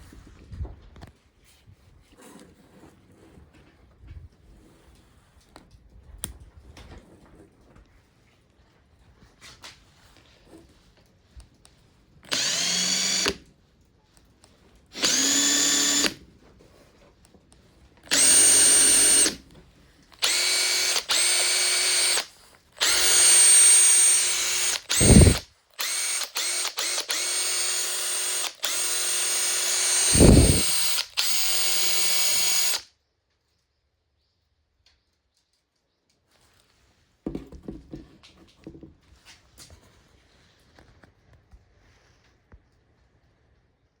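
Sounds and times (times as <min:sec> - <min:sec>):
impact driver motor whine: 0:12.3 - 0:13.4, 0:15.0 - 0:16.2, 0:18.1 - 0:19.4, 0:20.2 - 0:32.8.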